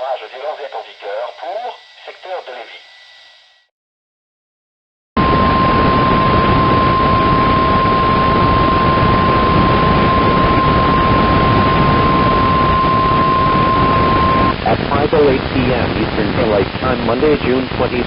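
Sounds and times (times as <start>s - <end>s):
radio static: 0.0s - 3.3s, 12.8s - 18.0s
loud alarm beep: 0.0s - 3.7s, 5.3s - 14.5s.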